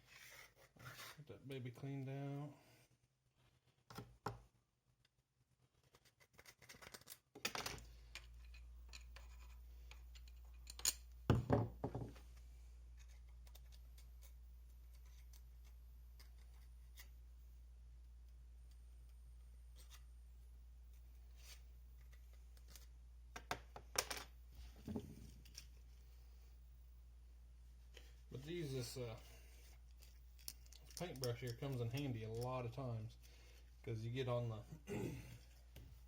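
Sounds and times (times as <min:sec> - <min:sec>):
low steady hum: 0:07.8 - 0:36.0.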